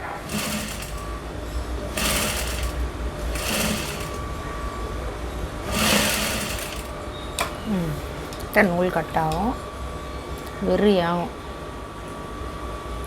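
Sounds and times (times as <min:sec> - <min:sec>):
sewing machine running: 0:00.0 - 0:04.7, 0:05.6 - 0:07.1.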